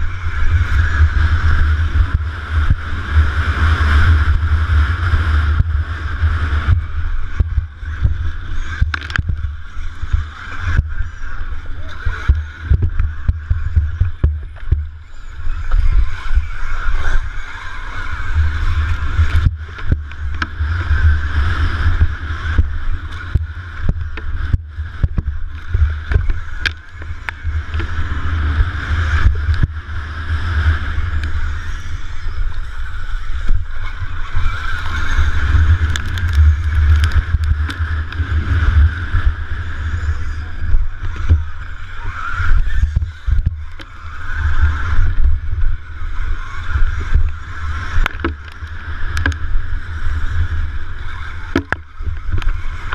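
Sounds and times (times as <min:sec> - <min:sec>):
electric motor and chain whine: 0:00.0 - 0:52.9
wind rumble on camera: 0:00.0 - 0:52.9.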